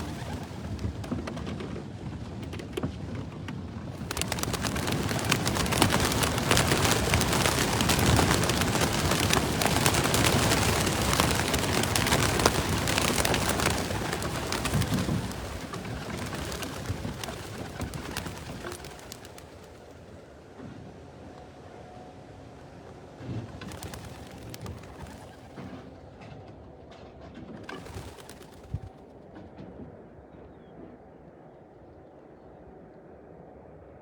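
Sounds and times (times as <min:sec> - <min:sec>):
pigeons wingbeats taking off: 0:00.0 - 0:01.7, 0:02.4 - 0:19.9, 0:23.6 - 0:25.7, 0:27.6 - 0:29.0.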